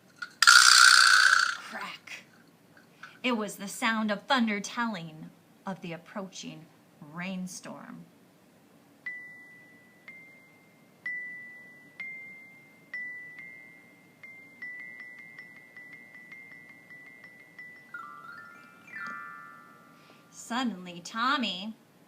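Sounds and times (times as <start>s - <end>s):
bell-like metal mallet instrument notes: 14.8s - 20.3s.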